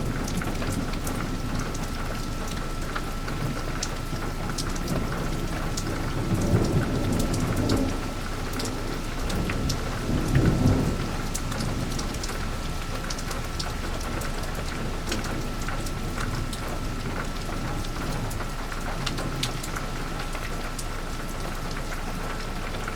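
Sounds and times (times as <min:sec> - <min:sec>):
thunder rumbling: 0:00.0 - 0:18.4
drips ticking: 0:00.0 - 0:22.9
heavy rain falling: 0:00.0 - 0:22.9.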